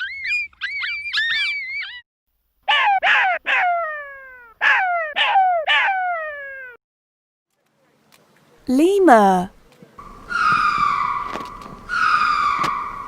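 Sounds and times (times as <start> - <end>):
jackal yipping and wailing: 0.0 - 2.0, 2.7 - 6.7, 10.0 - 13.0.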